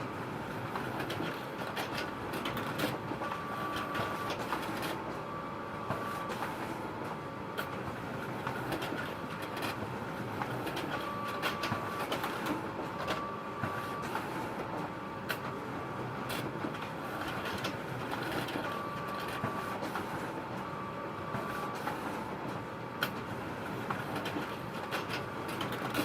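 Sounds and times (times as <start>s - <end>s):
photocopier whirring: 0.0s - 26.0s.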